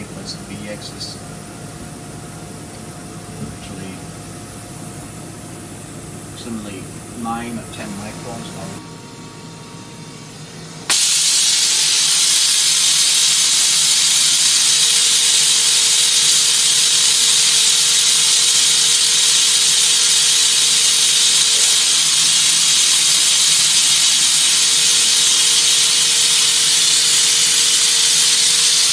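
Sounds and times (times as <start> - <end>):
machine hissing: 0.0 - 8.8, 10.8 - 28.9
faint steady hum: 0.0 - 10.9.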